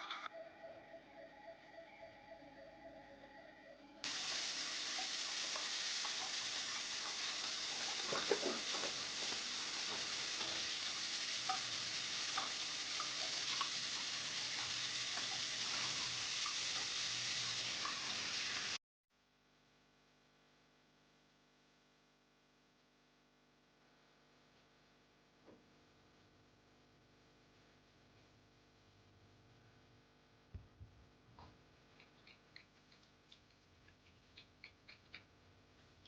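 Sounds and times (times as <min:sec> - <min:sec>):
food sizzling in a frying pan: 0:04.0 - 0:18.8.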